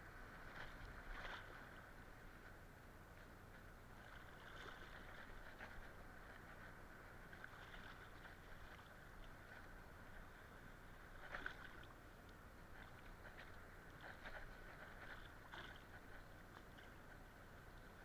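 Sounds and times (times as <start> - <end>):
water sloshing: 4.0 - 6.7.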